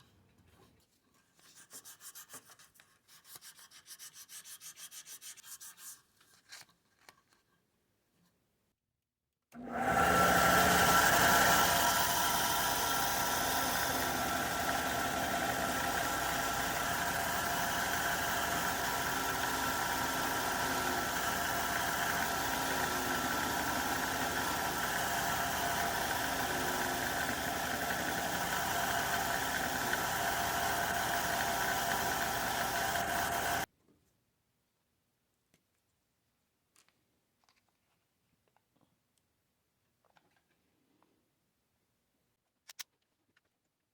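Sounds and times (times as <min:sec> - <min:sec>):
electric belt grinder running: 0:09.6 - 0:33.7.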